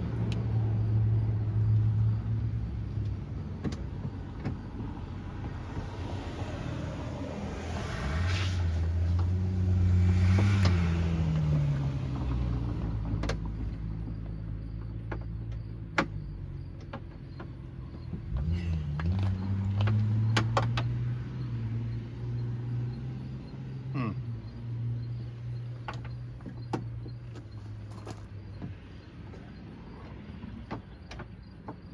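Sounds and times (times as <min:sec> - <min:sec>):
motor vehicle passing by: 0:04.9 - 0:14.0, 0:18.0 - 0:28.5.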